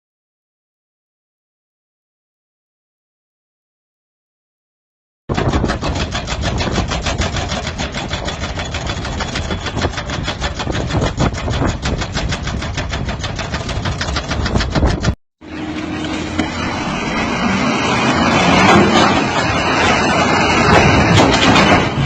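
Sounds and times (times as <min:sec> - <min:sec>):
heavy machinery knocking: 0:05.3 - 0:15.2, 0:16.0 - 0:22.0.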